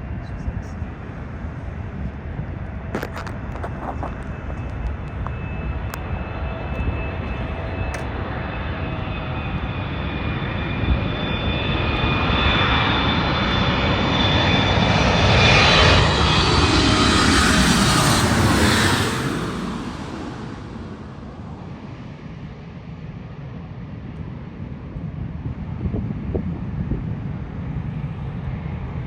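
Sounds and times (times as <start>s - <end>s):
jet engine noise: 0.0s - 29.0s
high whining jet tones: 0.5s - 21.7s.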